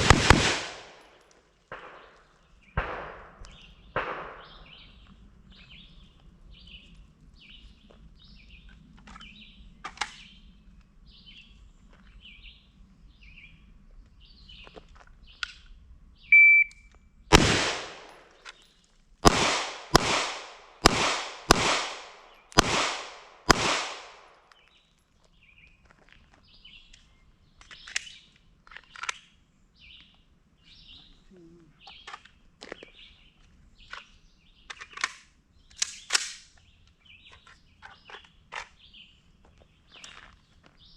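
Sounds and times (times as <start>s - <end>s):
gunshots: 0.0s - 3.4s, 4.0s - 4.7s, 17.3s - 18.3s, 19.2s - 24.4s
birds chirping: 0.0s - 40.9s
electronic beep: 16.3s - 16.8s.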